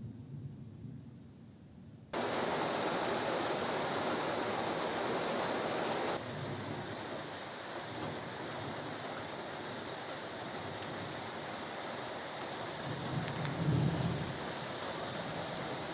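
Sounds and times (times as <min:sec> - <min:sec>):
heavy rain hissing: 0:02.2 - 0:15.9
thunder rumbling: 0:12.8 - 0:15.9.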